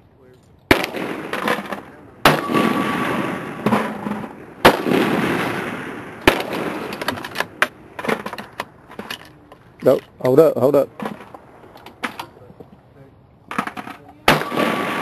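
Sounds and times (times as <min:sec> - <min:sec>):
gunshots with rolling echo: 0:00.7 - 0:08.2, 0:14.2 - 0:15.0.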